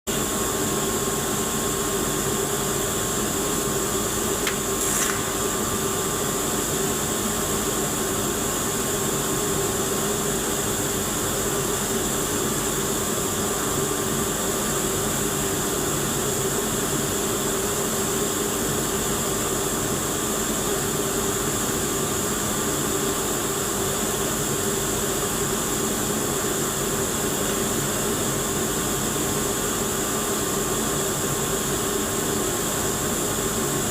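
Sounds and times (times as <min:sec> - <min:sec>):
welding arc hissing: 0:04.4 - 0:06.4.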